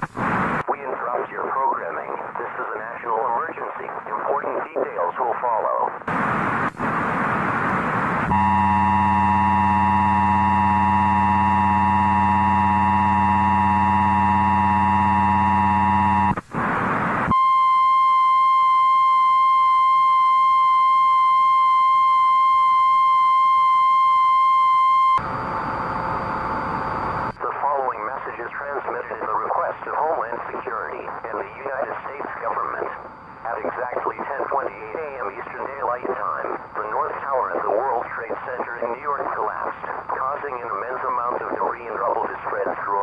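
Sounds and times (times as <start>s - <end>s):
static: 0.0s - 17.5s, 24.9s - 43.0s
steady tone: 7.6s - 16.4s
harsh buzzing attention signal: 8.3s - 16.4s.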